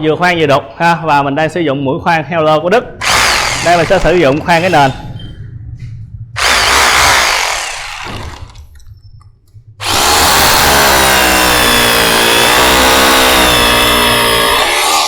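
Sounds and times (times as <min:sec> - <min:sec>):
rotary hammer drilling into floor: 0:03.0 - 0:04.3, 0:06.4 - 0:08.7, 0:09.8 - 0:15.0.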